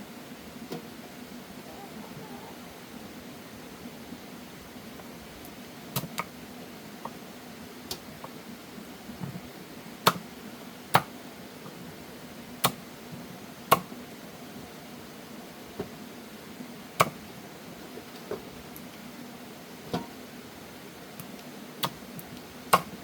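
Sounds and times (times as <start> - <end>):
faint steady background noise: 0.0 - 23.0.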